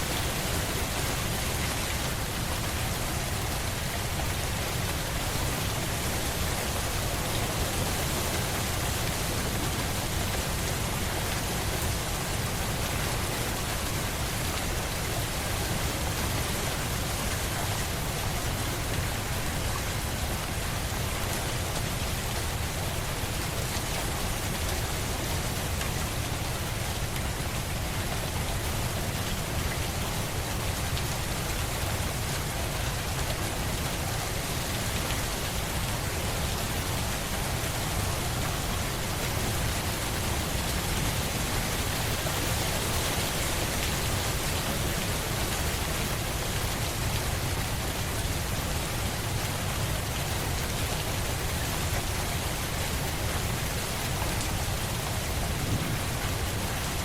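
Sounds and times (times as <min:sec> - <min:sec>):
rain falling: 0:00.0 - 0:57.0.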